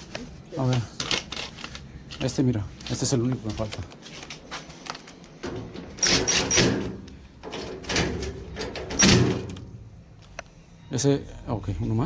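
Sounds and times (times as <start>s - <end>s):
metal parts clattering and scraping: 5.4s - 9.6s.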